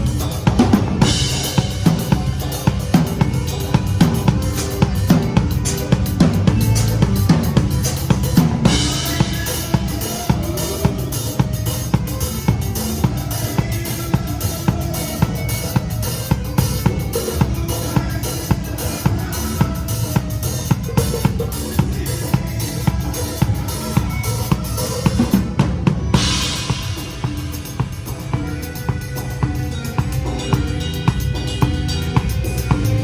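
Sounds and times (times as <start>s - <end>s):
bass drum and snare hits: 0.0s - 11.0s
background song music: 0.0s - 33.0s.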